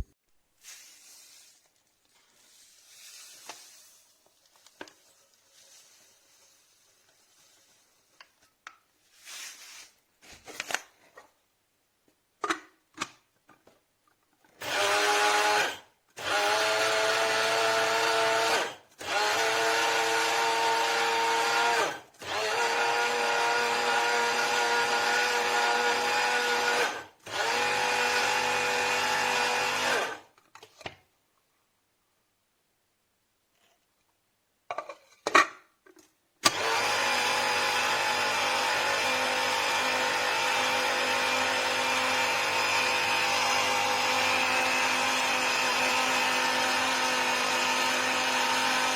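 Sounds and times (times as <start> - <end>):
coffee grinder motor whine: 14.6 - 30.3, 36.4 - 48.9.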